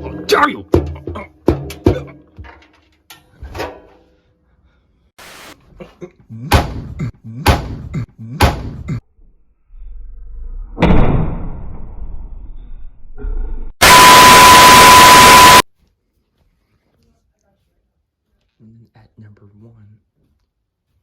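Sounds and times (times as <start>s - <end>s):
loud rushing noise: 13.8s - 15.6s.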